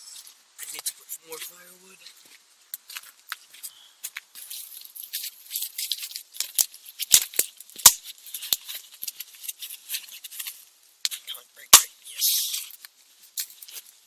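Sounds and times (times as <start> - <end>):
firewood crackling and snapping: 2.0 - 14.0.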